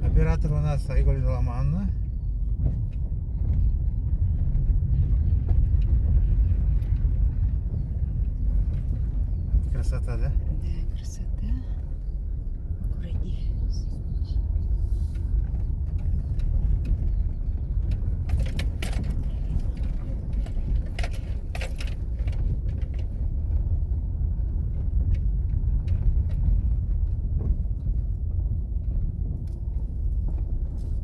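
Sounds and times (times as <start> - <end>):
car driving rumble: 0.0 - 31.0
rattles and clinks: 17.8 - 23.1.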